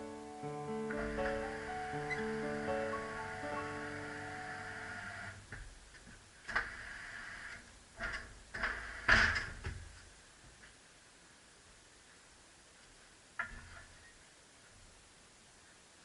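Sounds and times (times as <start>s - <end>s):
background music: 0.0s - 5.4s
knocks and clunks: 8.0s - 10.1s.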